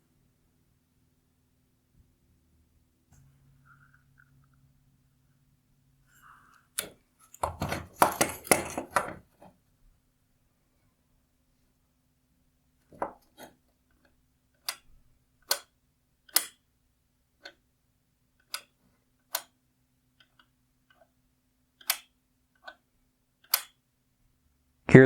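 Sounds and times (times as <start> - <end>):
small parts clicking and tapping: 6.5 - 9.4, 12.9 - 15.7, 16.3 - 16.6, 21.8 - 22.8, 23.4 - 23.8.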